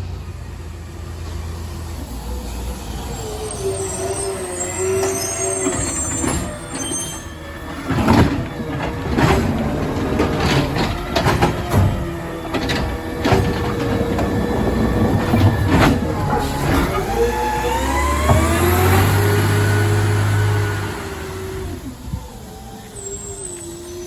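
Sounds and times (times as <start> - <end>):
garbage truck engine running: 0.0 - 24.0
hydraulic whine: 0.0 - 24.0
loud clunks and bangs: 7.6 - 20.5.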